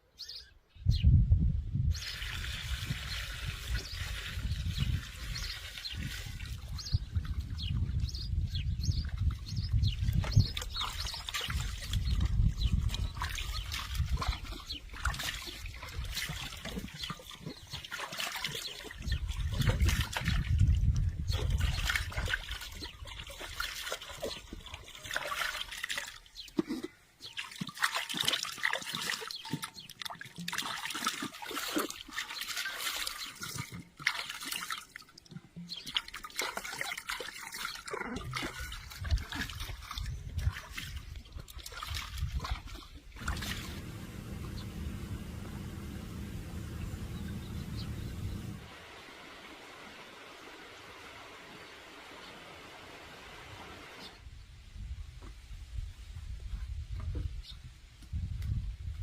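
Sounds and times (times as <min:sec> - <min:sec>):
water trickling and splashing: 0:01.9 - 0:54.3
low rumble: 0:43.2 - 0:48.7.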